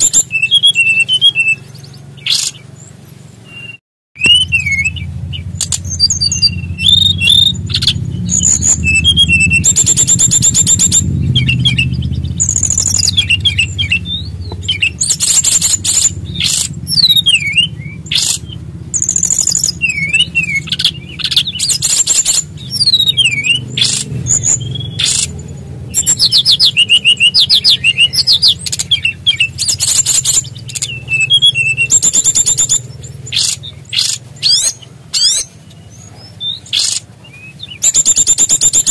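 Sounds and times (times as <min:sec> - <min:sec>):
steady low hum: 0:00.0 - 0:38.8
songbird trills and whistles: 0:00.0 - 0:38.9.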